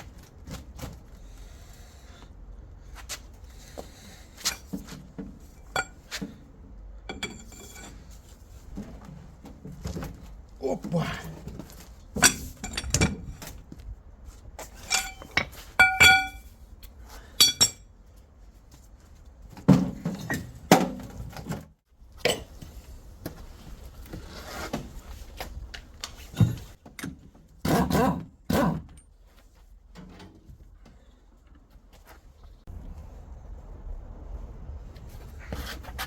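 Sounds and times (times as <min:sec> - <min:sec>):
steel gearbox parts clinking: 0:07.1 - 0:08.1, 0:12.1 - 0:13.5, 0:14.6 - 0:16.5, 0:17.3 - 0:17.9
metallic ringing tone: 0:14.9 - 0:16.5.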